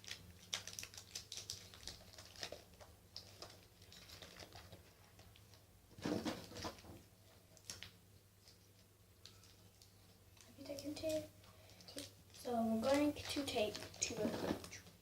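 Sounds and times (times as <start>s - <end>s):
plastic wrappers crinkling: 0.0s - 15.0s.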